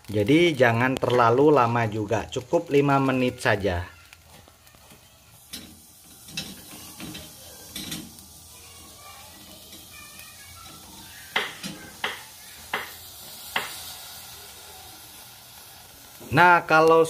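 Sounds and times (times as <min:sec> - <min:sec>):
burner hiss: 0:00.0 - 0:17.0
sugarcane knocking on metal grate: 0:11.3 - 0:13.8.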